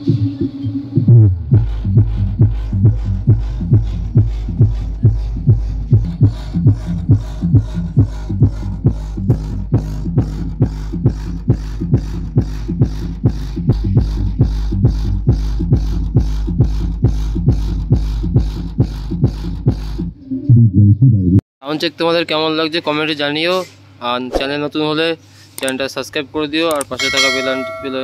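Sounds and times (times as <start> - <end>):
bass-heavy dance music: 0.0 - 21.4.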